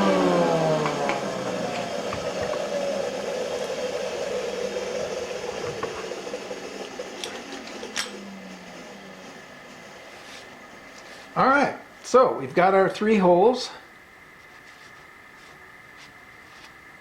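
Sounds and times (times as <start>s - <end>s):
milling machine motor winding down: 0.0s - 11.8s.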